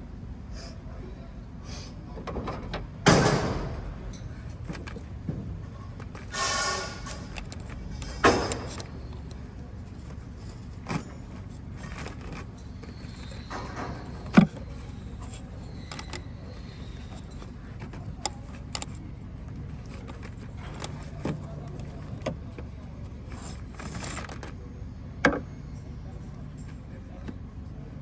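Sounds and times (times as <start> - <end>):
low background rumble: 0.0 - 25.1
screwdriver clicks and knocks: 7.0 - 16.3.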